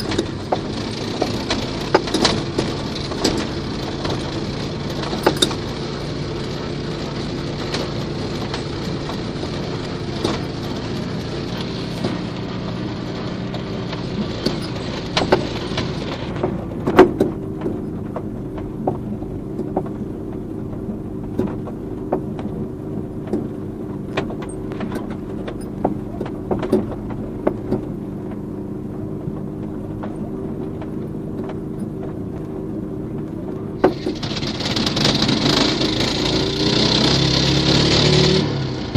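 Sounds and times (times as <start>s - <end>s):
clicks and rattles: 0.0s - 12.5s, 13.4s - 22.6s, 33.2s - 36.5s
single-cylinder engine running: 0.0s - 38.9s.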